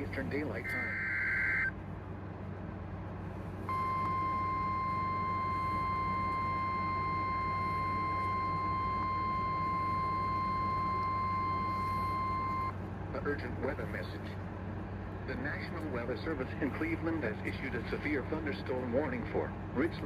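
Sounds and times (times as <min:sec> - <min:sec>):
low electrical hum: 0:00.0 - 0:20.0
steady warning alarm tone: 0:00.6 - 0:01.7, 0:03.7 - 0:12.8.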